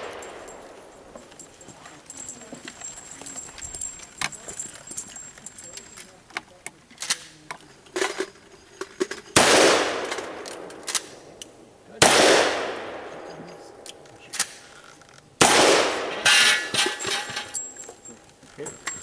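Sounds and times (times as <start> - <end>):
echoing gunshots: 0.0 - 1.5, 9.4 - 14.6, 15.4 - 16.8.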